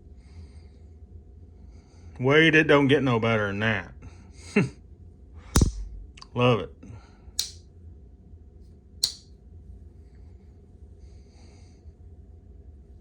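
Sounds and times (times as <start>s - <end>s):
faint low hum: 0.0s - 13.0s
pocket knife clicks: 7.4s - 7.6s, 9.0s - 9.3s.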